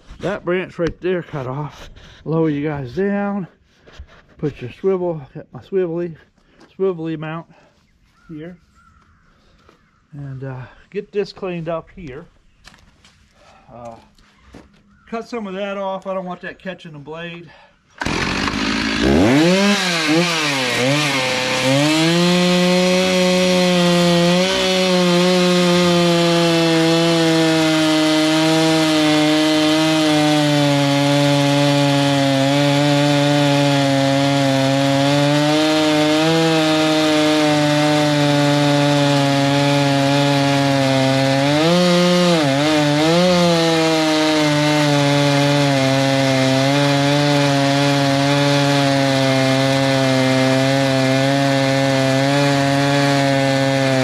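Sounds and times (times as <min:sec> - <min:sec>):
chainsaw cutting wood: 0:18.0 - 0:54.0.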